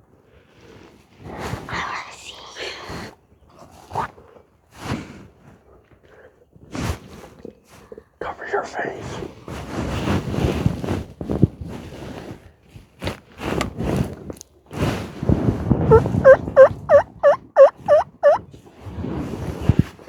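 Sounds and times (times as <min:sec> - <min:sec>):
wild turkey calling: 0:15.9 - 0:18.4.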